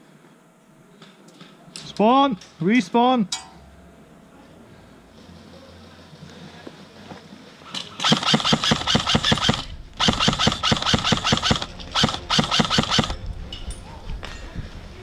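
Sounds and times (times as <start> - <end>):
airsoft rifle firing bursts: 8.0 - 13.2.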